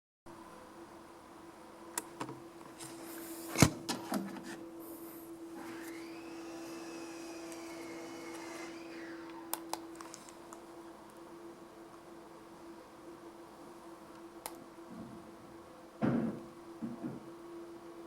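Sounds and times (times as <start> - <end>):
ceiling fan humming: 0.3 - 18.0
rising and falling whine: 5.5 - 10.4.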